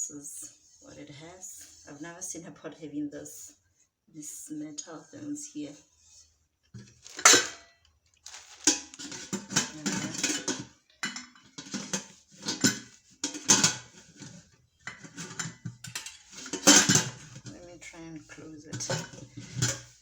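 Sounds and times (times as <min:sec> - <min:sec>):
metal pot and lid clanking: 0:07.0 - 0:07.7, 0:08.5 - 0:17.6, 0:18.6 - 0:20.0.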